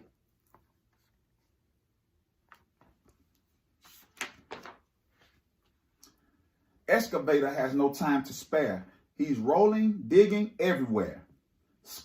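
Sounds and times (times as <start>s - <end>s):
book page turning: 2.5s - 5.8s.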